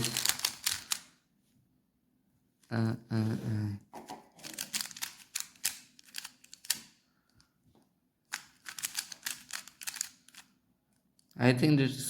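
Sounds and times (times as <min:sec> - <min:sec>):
puzzle cube plastic clicks: 0:00.0 - 0:01.1, 0:04.4 - 0:07.0, 0:08.3 - 0:10.5.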